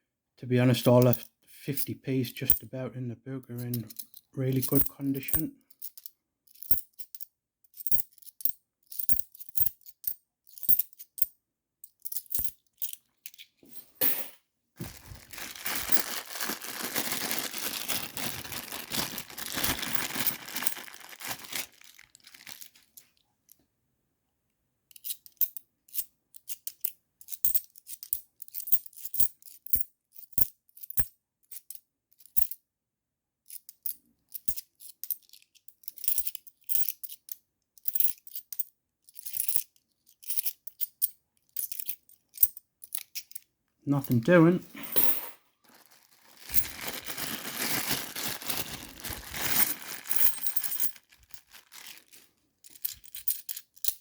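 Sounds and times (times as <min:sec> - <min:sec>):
coins clicking and clinking: 0:03.6 - 0:11.3, 0:12.0 - 0:14.4, 0:44.8 - 0:45.4, 0:49.5 - 0:51.0, 0:52.7 - 0:54.0.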